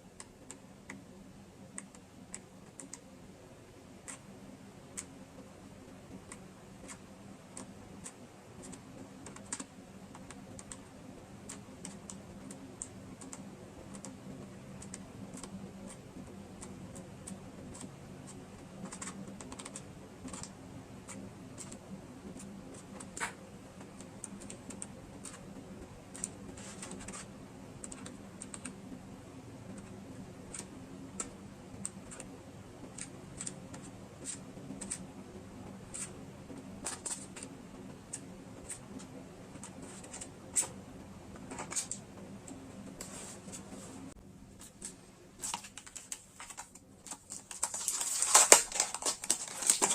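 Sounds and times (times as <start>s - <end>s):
faint steady hum: 0.0s - 49.9s
stationery and packaging being handled: 43.0s - 49.9s.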